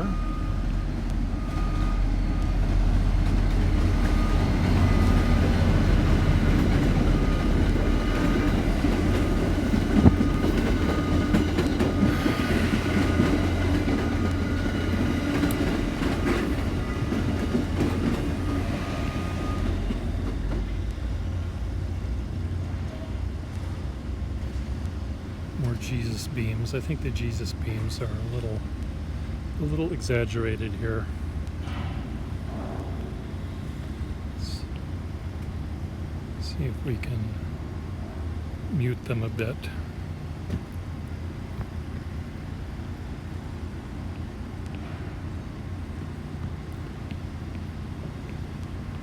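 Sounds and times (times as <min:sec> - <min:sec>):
faint high beep: 0:00.0 - 0:02.6
train passing rumble: 0:00.0 - 0:49.0.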